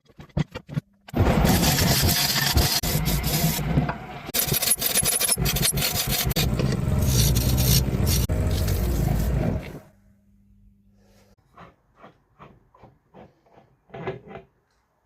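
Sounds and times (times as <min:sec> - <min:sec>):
tool scraping wood on lathe: 0:01.2 - 0:03.6, 0:04.4 - 0:09.8.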